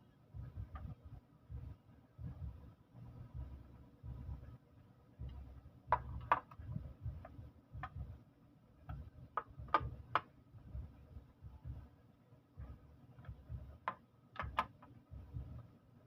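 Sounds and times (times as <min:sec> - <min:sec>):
dull low thuds: 0:00.3 - 0:04.6, 0:05.2 - 0:08.2, 0:08.9 - 0:11.9, 0:12.6 - 0:13.8, 0:14.4 - 0:15.7
light clicks and taps: 0:08.8 - 0:10.3.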